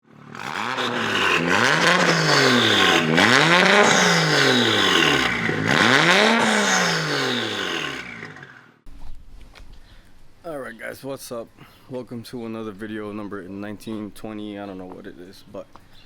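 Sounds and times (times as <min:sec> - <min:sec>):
car engine revving: 0:00.1 - 0:08.7.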